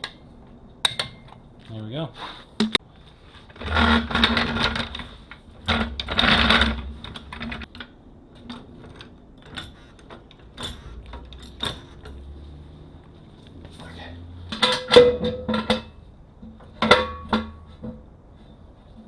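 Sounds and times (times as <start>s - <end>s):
metal scraping: 2.3s - 7.8s, 8.4s - 19.0s
metal tools clattering: 8.8s - 12.4s, 14.4s - 18.0s.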